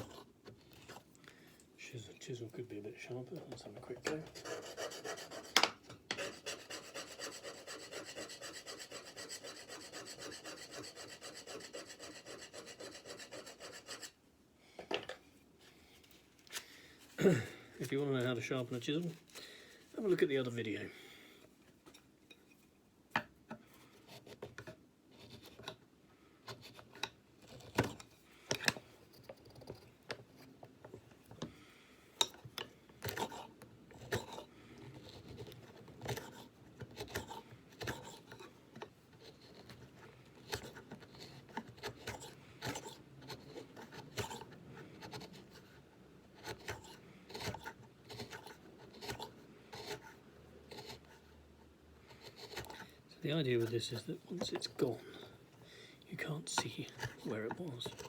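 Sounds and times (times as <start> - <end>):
hand chisel scraping wood: 0.0 - 1.1, 3.4 - 14.2, 33.0 - 45.8, 46.4 - 51.3, 52.0 - 55.3, 56.2 - 58.0.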